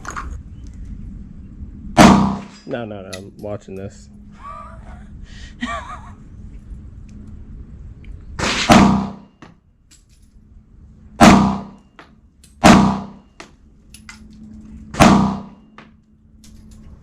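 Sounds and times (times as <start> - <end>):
gunshots: 2.0 - 2.6, 8.4 - 9.3, 11.2 - 11.8, 12.6 - 13.3, 15.0 - 15.7.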